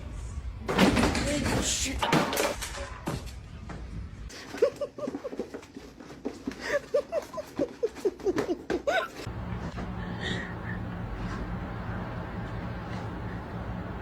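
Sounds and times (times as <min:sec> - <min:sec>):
steady low hum: 0:09.3 - 0:14.0.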